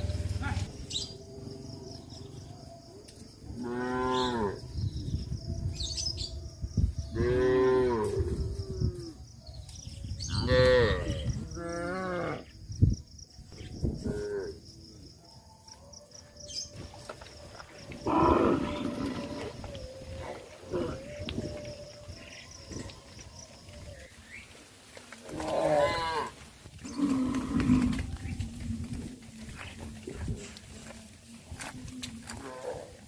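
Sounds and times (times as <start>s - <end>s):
cows mooing: 3.6s - 4.6s, 18.0s - 21.1s, 25.3s - 28.2s.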